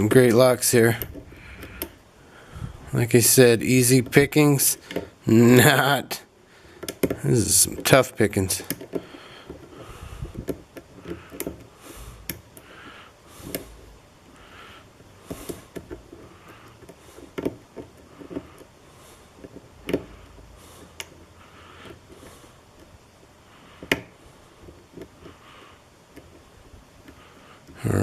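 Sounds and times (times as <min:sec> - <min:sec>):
soft breaths: 0:00.8 - 0:03.6, 0:08.6 - 0:28.0.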